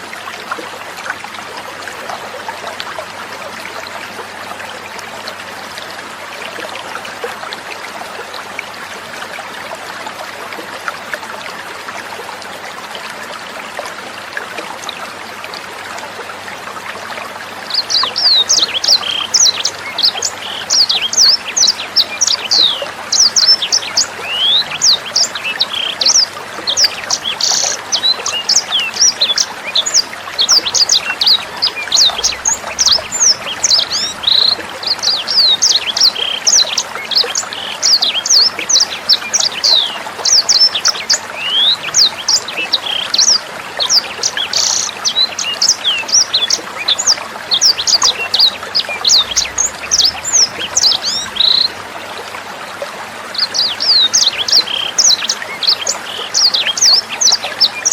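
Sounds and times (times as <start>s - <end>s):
running water trickling: 0.0s - 57.9s.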